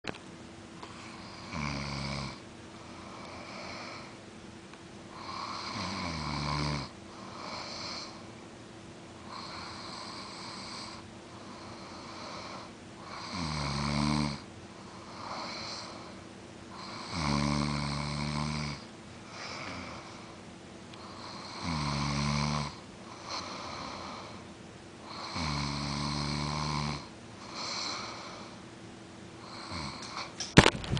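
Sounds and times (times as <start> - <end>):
soft breathy breaths: 0.8 - 1.6, 2.7 - 4.2, 7.0 - 8.4, 9.2 - 13.2, 14.6 - 17.1, 19.1 - 21.6, 22.8 - 25.4, 27.4 - 28.7
person snoring: 1.1 - 2.4, 5.2 - 8.2, 9.3 - 14.4, 16.7 - 20.3, 21.0 - 24.4, 25.0 - 28.6, 29.4 - 30.4.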